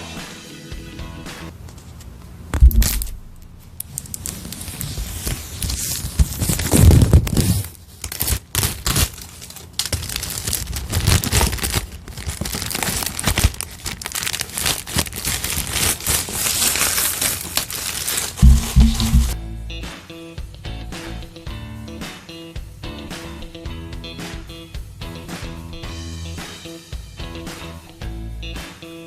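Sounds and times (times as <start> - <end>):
packaging tearing and crinkling: 2.6 - 19.4
dull bumps of box handled: 18.4 - 19.4.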